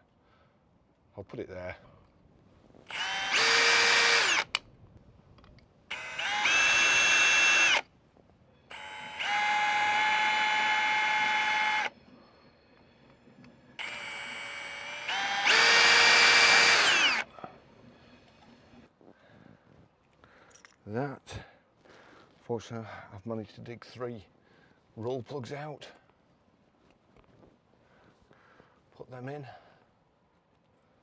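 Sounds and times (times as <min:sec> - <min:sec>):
electric drill drilling into wall: 0:02.9 - 0:04.6, 0:05.9 - 0:07.8, 0:08.7 - 0:11.9, 0:13.8 - 0:17.3.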